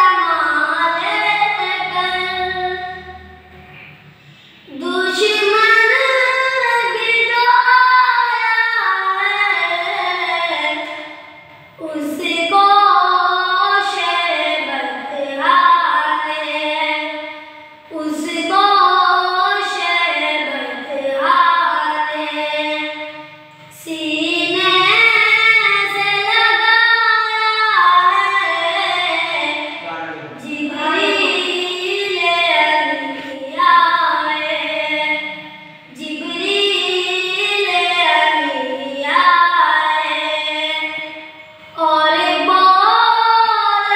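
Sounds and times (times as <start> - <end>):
person singing devotional song: 17.9 - 43.9.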